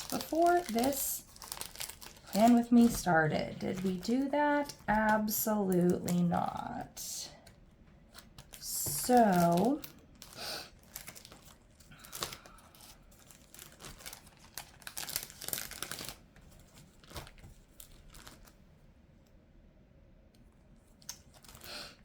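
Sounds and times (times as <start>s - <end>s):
sticker sheets rustling: 0.0s - 7.0s.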